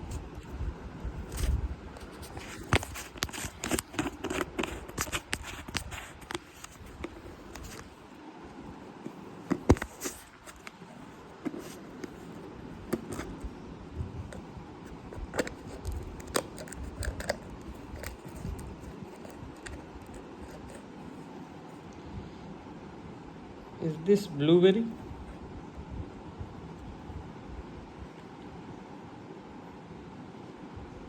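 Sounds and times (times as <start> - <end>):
packet crinkling and clicking: 2.2 - 7.9, 15.1 - 20.8.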